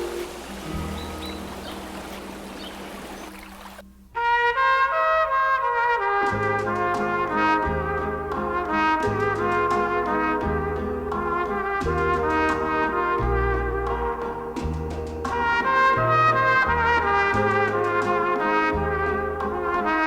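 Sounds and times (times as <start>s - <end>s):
brass melody over bass line: 0.0s - 3.0s, 4.2s - 20.0s
steady hiss: 0.0s - 4.2s.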